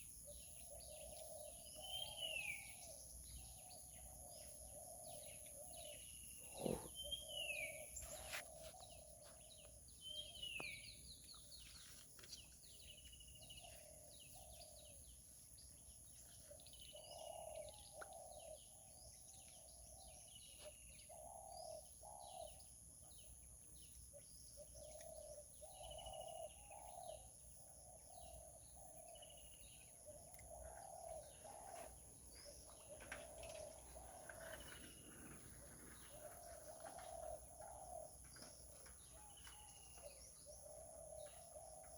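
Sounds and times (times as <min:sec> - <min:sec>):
bird chirping: 0:00.0 - 0:41.9
dove cooing: 0:04.2 - 0:09.4, 0:30.1 - 0:41.9.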